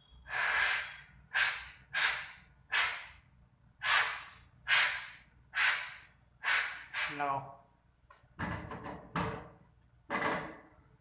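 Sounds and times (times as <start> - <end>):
hissing puffs of air: 0.2 - 3.2, 3.8 - 7.3.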